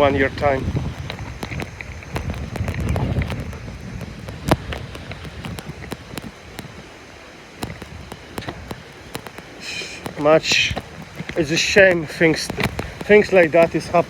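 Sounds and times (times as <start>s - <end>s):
sharp clicks and knocks: 0.4s - 6.8s, 7.6s - 14.0s.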